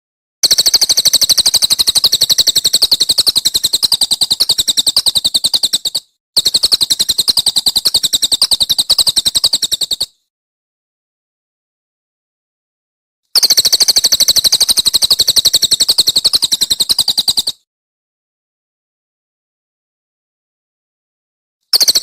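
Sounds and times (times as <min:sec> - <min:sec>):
songbird rattling trill: 0:00.4 - 0:10.2, 0:13.4 - 0:17.6, 0:21.7 - 0:22.0.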